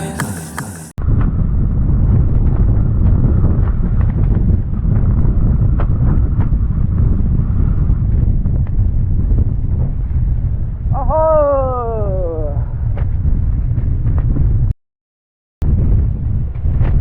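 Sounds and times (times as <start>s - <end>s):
guitar music: 0.0s - 0.9s
strong wind buffeting microphone: 1.0s - 14.7s, 15.6s - 17.0s.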